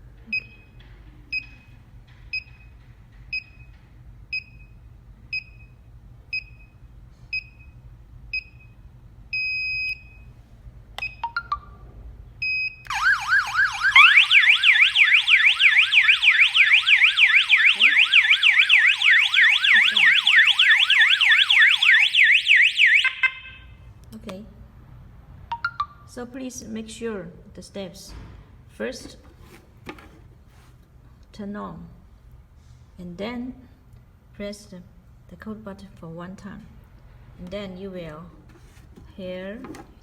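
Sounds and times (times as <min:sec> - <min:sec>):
electronic siren warbling: 0:12.9 - 0:22.1.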